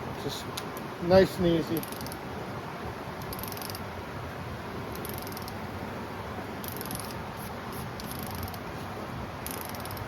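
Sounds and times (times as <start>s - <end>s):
steady background hiss: 0.0s - 10.0s
hand ratchet clicking: 9.4s - 10.0s.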